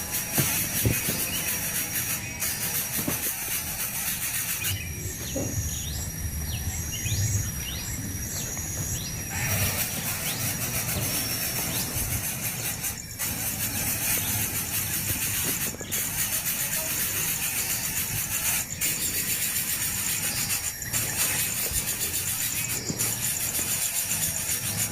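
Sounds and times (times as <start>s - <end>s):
small bird chirping: 0.0s - 24.9s
low outdoor rumble: 4.7s - 21.6s.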